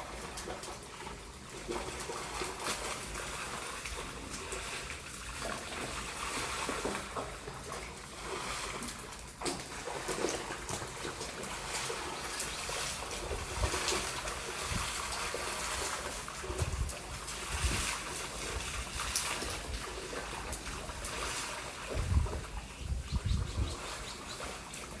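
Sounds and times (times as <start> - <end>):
floodwater splashing and trickling: 0.0 - 25.0.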